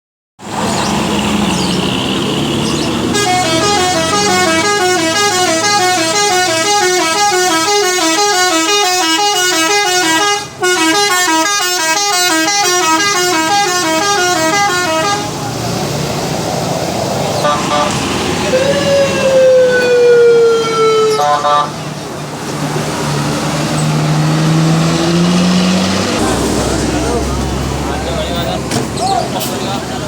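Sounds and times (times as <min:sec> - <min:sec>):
bus multi-tone horn tune: 0:02.7 - 0:15.4, 0:17.4 - 0:22.0.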